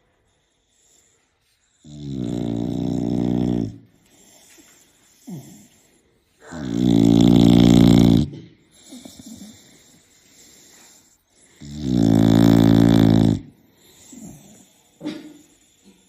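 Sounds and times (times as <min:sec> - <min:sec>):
quiet breathing: 0:00.0 - 0:02.8, 0:03.7 - 0:06.7, 0:08.5 - 0:16.0
short snort: 0:00.0 - 0:16.0
man snoring: 0:01.8 - 0:03.8, 0:06.4 - 0:09.7, 0:11.5 - 0:14.8.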